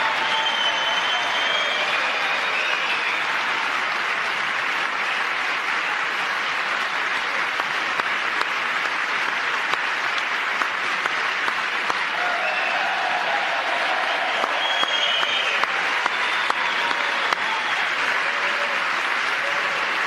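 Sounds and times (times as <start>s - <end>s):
large audience applauding: 0.0s - 20.0s.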